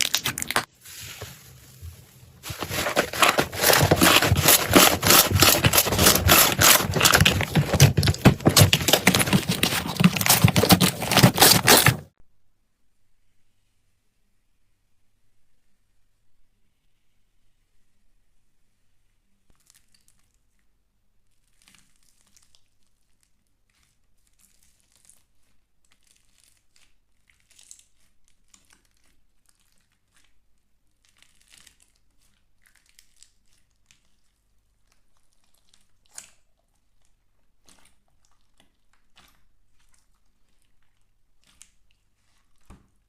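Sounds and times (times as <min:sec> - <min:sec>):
slime crackling: 0:00.0 - 0:00.7, 0:02.4 - 0:12.1.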